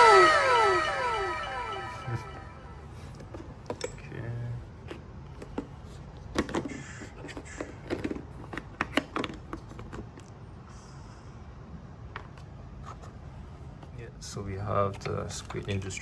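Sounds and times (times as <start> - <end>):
plastic case clicks and knocks: 4.8 - 10.3.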